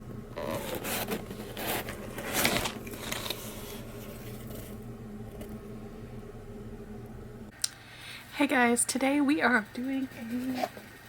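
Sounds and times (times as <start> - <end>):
faint low hum: 0.0 - 11.0
rustling and scraping handling noises: 0.4 - 5.6.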